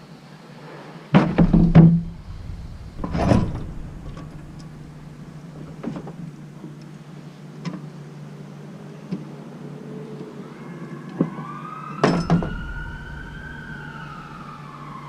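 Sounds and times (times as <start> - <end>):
steady low hum: 1.3 - 6.2, 12.2 - 15.0.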